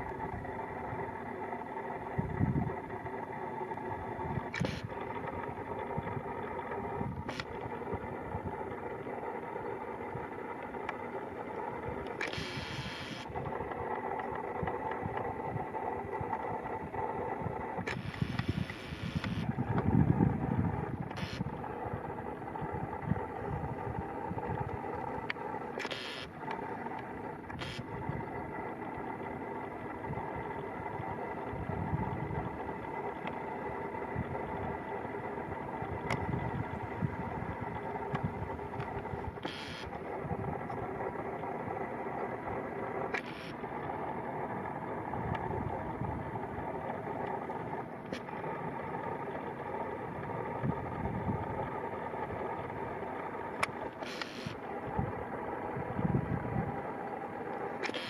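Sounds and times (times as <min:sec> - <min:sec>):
diesel machinery running: 0:00.0 - 0:58.0.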